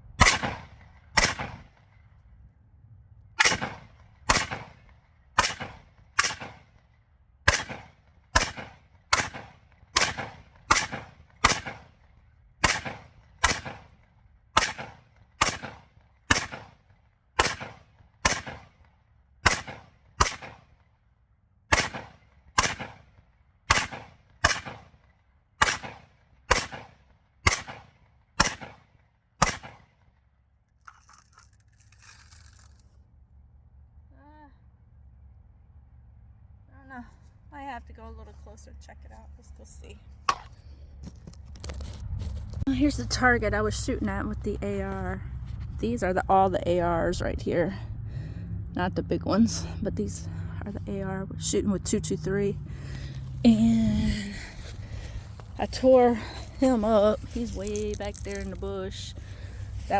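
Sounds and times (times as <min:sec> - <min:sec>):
rifle gunshots: 0:00.2 - 0:01.7, 0:03.4 - 0:04.8, 0:05.4 - 0:06.7, 0:07.5 - 0:11.9, 0:12.6 - 0:13.9, 0:14.6 - 0:16.8, 0:17.4 - 0:18.7, 0:19.4 - 0:20.6, 0:21.7 - 0:23.0, 0:23.7 - 0:24.9, 0:25.6 - 0:28.8, 0:29.4 - 0:29.8.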